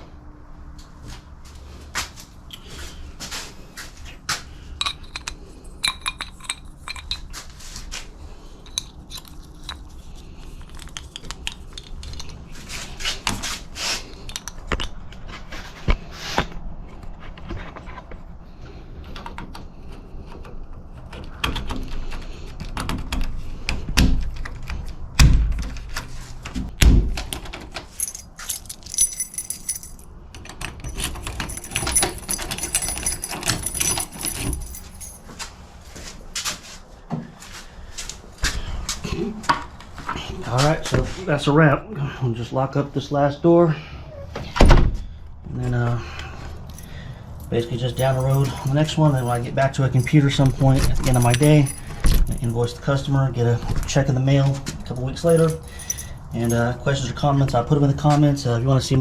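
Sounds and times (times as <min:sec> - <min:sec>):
lock hardware clicking and scraping: 0:04.8 - 0:07.4, 0:08.6 - 0:13.4, 0:27.2 - 0:35.3, 0:46.7 - 0:52.7, 0:55.0 - 0:56.6
keys jangling: 0:27.9 - 0:35.4, 0:46.7 - 0:52.8, 0:55.0 - 0:56.6.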